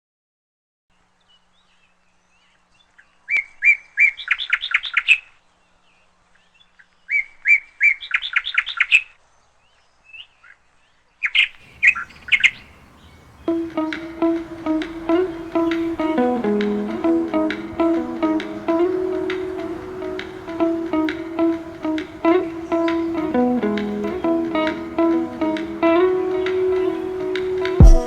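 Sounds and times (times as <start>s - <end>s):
songbird singing trills: 1.3s - 28.0s
plucked-string music: 13.5s - 28.0s.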